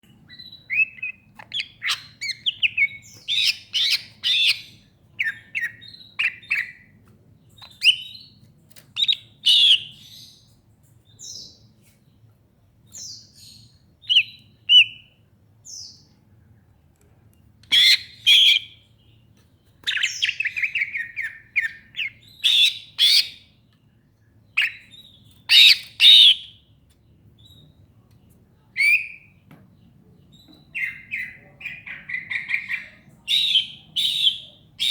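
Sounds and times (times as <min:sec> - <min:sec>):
bird singing whistled phrases: 0:28.8 - 0:29.3, 0:33.3 - 0:34.9.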